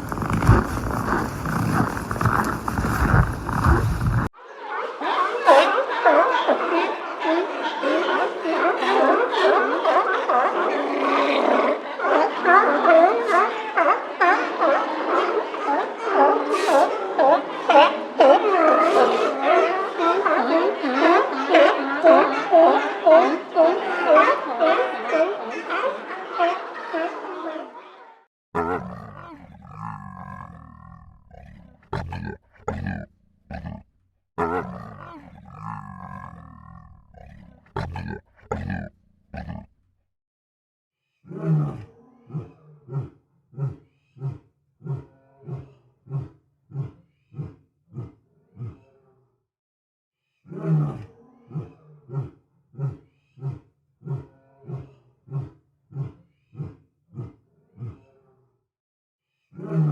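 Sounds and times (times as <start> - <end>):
big cat grunts: 28.6 - 39.7, 50.5 - 58.2
big cat roaring: 28.6 - 39.7, 41.3 - 48.8, 50.5 - 58.0.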